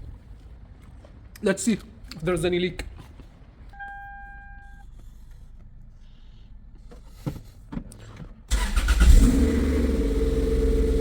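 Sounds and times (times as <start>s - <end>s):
car warning chime: 3.8s - 4.8s
car engine starting: 8.5s - 11.0s.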